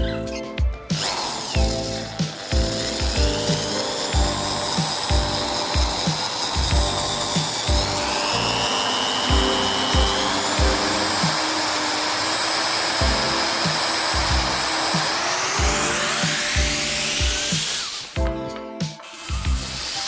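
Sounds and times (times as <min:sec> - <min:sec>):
power tool whining: 0:00.0 - 0:18.3, 0:18.9 - 0:20.0
background music with steady beat: 0:00.0 - 0:20.0.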